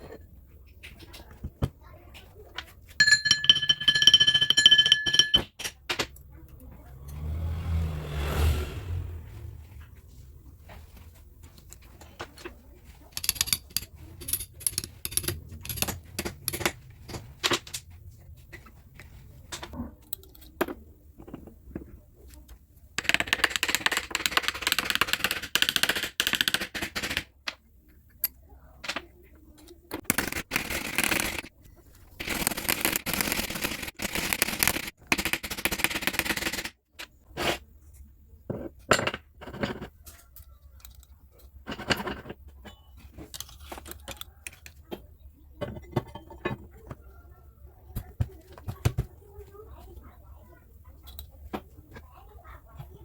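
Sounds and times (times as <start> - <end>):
metal scraping: 6.9 - 10.3
metal parts clicking and knocking: 11.4 - 18.7, 23.0 - 31.5.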